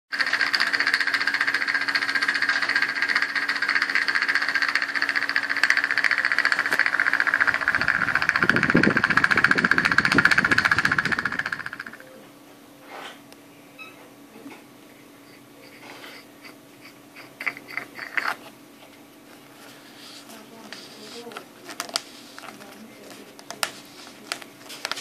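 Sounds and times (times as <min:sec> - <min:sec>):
fan rattling buzz: 0:00.1 - 0:12.2, 0:14.7 - 0:25.0
fan motor hum: 0:00.1 - 0:25.0.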